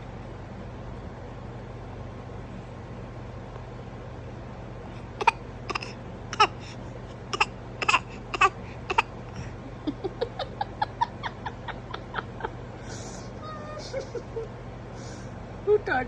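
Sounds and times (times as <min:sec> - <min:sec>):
baby fake coughing: 0:05.0 - 0:09.5.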